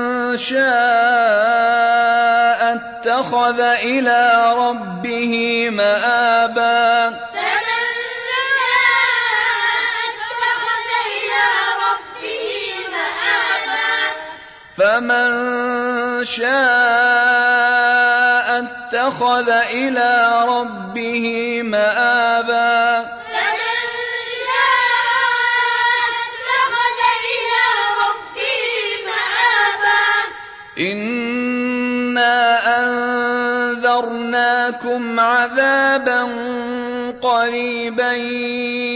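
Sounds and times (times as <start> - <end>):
child chanting melodically: 6.8 - 14.4, 22.1 - 30.4.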